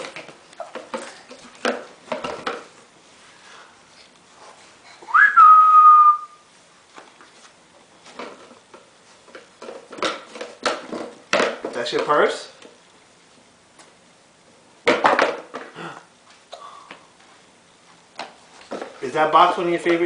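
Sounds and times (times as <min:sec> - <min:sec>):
short whistle: 0:05.1 - 0:06.4.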